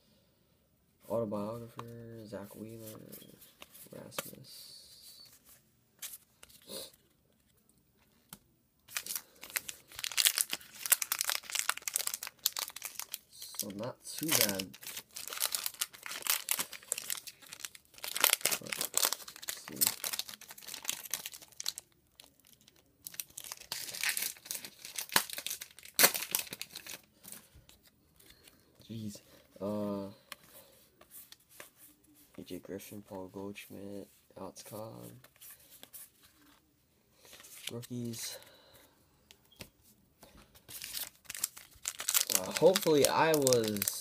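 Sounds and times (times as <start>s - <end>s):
wrapper tearing and crinkling: 8.9s - 27.1s, 40.7s - 44.0s.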